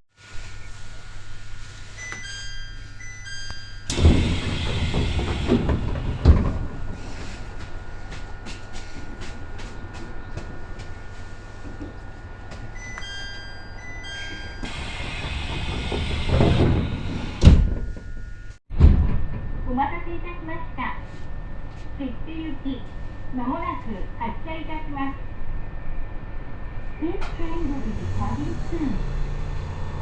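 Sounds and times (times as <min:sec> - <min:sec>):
train low rumble: 0:00.1 - 0:30.0
heavy door thuds: 0:03.9 - 0:07.4, 0:14.6 - 0:19.5
steady high tones: 0:12.2 - 0:18.6.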